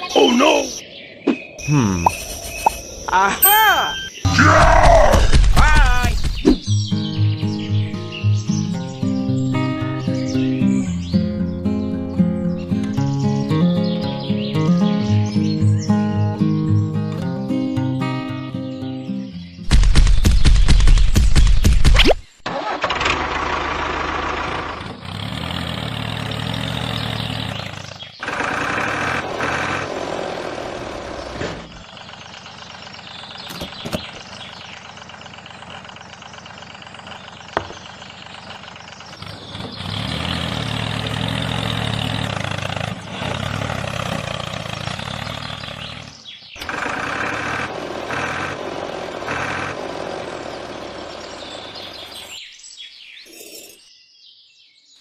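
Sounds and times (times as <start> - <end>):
tractor-like engine running: 4.4 - 17.4, 22.5 - 52.4.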